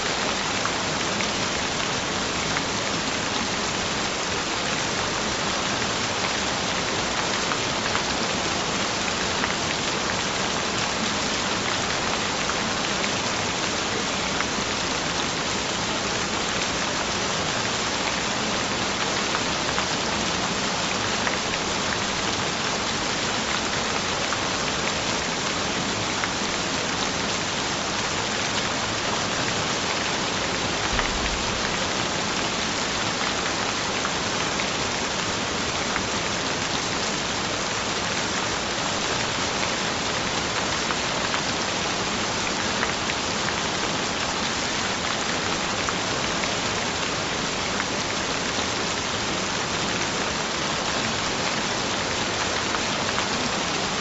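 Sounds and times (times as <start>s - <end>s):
steady rain hiss: 0.0s - 54.0s
rain drops tapping: 30.6s - 34.3s.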